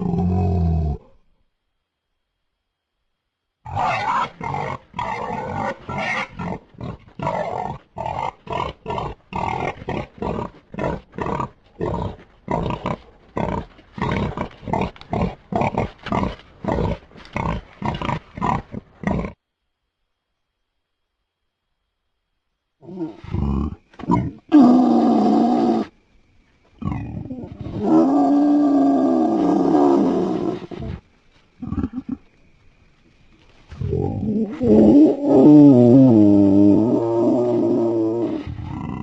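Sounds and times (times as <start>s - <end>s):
rough animal calls: 3.7s - 19.4s, 26.7s - 32.4s.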